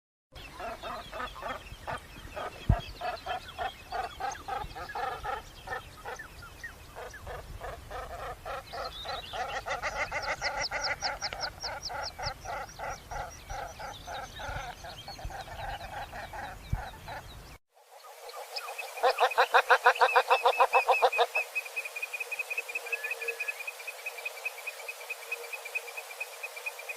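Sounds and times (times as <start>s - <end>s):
ducks calling: 0.4s - 6.3s, 6.9s - 17.2s, 18.5s - 21.6s.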